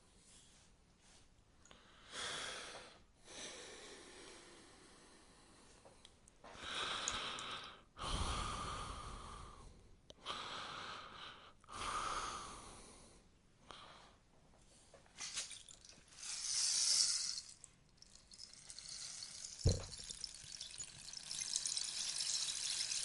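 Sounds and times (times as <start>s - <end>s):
rainstick pellets cascading: 15.2s - 23.0s.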